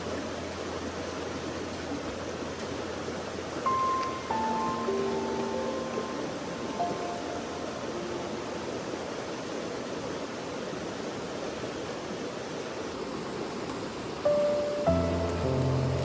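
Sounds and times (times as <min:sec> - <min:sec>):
flowing river water: 0:00.0 - 0:16.0
music: 0:03.6 - 0:08.5, 0:14.3 - 0:16.0.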